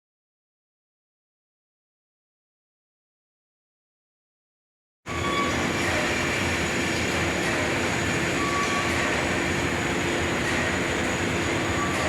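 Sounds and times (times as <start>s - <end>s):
steady machinery noise: 5.1s - 12.0s.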